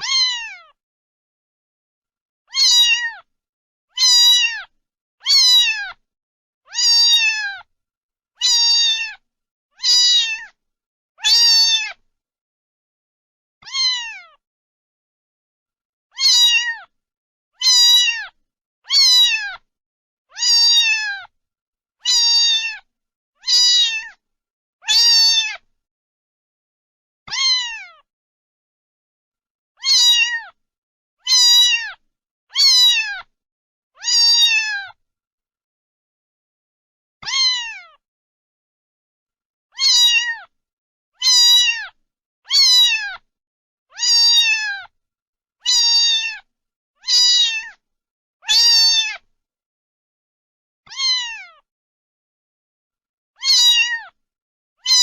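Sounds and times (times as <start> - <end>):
cat meowing: 0.0 - 0.8, 2.5 - 3.3, 3.9 - 6.0, 6.7 - 7.7, 8.4 - 9.2, 9.8 - 10.6, 11.2 - 12.0, 13.6 - 14.4, 16.1 - 16.9, 17.6 - 19.7, 20.3 - 21.3, 22.0 - 24.2, 24.8 - 25.7, 27.3 - 28.1, 29.8 - 30.6, 31.2 - 33.3, 34.0 - 35.0, 37.2 - 38.0, 39.7 - 40.5, 41.2 - 43.2, 43.9 - 44.9, 45.6 - 47.8, 48.4 - 49.3, 50.9 - 51.7, 53.4 - 54.2.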